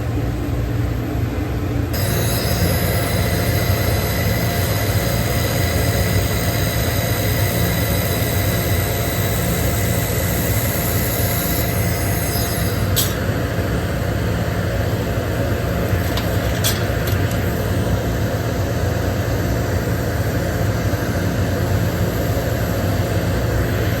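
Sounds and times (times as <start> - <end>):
machine hum and hiss: 0.0 - 24.0
high whining tones: 1.9 - 13.4.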